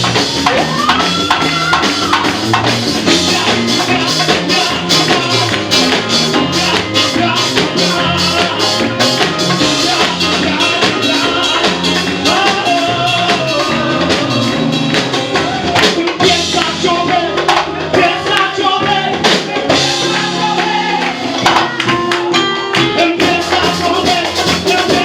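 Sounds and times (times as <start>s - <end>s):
drums beating: 0.0s - 25.0s
singing over instruments: 3.1s - 14.5s.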